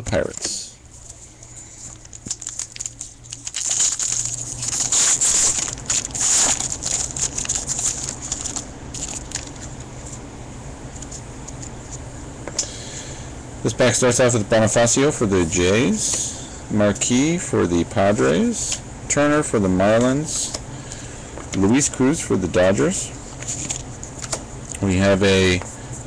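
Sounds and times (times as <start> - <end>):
foil wrapper tearing and crinkling: 1.9 - 9.8.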